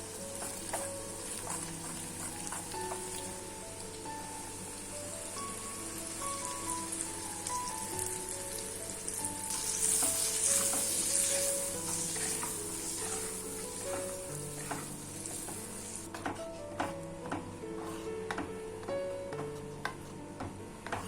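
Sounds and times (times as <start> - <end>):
food sizzling in a pan: 0.0 - 16.1
background music: 0.0 - 21.0.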